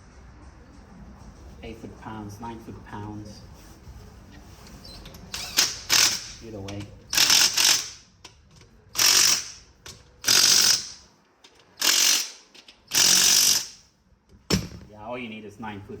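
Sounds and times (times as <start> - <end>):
ratchet wrench clicking: 5.3 - 6.4, 7.1 - 13.8.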